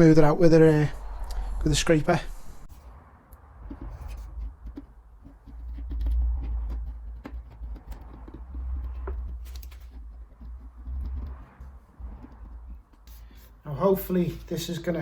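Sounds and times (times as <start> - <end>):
low rumble: 0.0 - 4.7.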